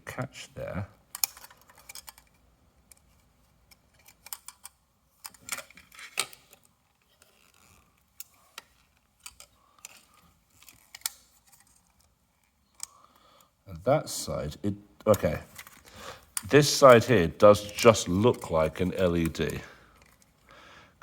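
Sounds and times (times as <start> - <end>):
small plastic parts clicking: 1.1 - 13.5, 17.6 - 20.5.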